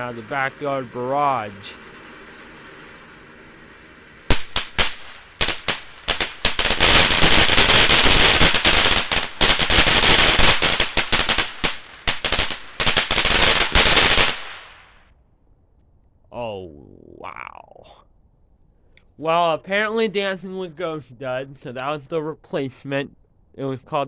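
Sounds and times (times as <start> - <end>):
firework bangs: 0.0 - 15.0
firework crackling: 0.0 - 15.0
firework hiss: 0.0 - 15.0.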